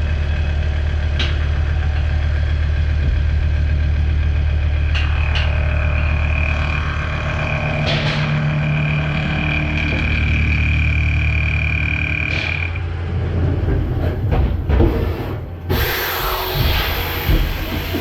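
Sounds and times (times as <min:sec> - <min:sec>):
machine cutting steel: 0:05.0 - 0:18.0
knocks and clatter: 0:12.3 - 0:18.0.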